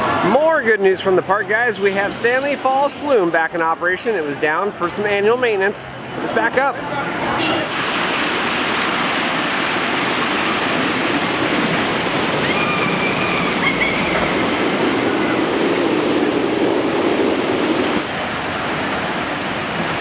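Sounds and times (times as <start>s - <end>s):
water rushing through channel: 7.6s - 20.0s.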